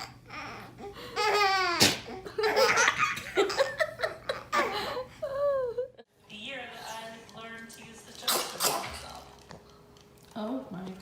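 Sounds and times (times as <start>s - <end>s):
baby laughing: 1.2s - 5.8s.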